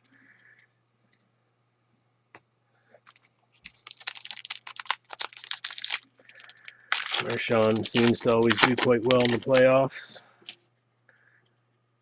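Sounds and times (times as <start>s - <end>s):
cards and foil wrappers crinkling: 3.1s - 10.6s.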